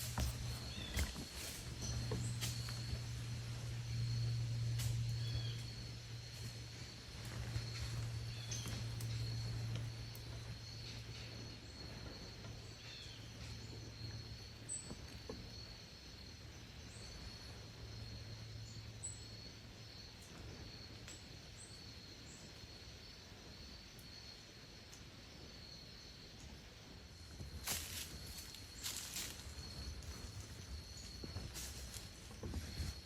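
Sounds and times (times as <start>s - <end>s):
low hum: 0.0s - 21.3s
high-pitched insect trill: 0.0s - 33.0s.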